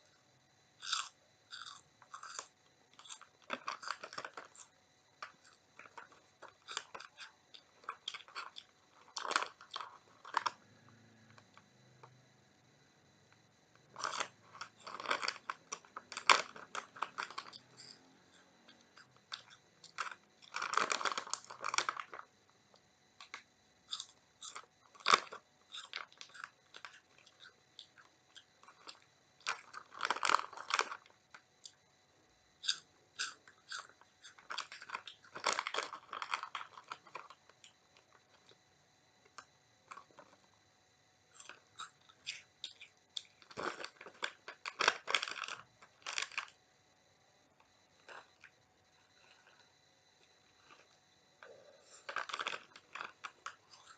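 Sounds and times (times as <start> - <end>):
child crunching snack: 0.8 - 10.6, 13.9 - 22.3, 23.2 - 31.1, 32.6 - 37.4, 41.4 - 46.5, 48.0 - 49.7, 50.6 - 53.9.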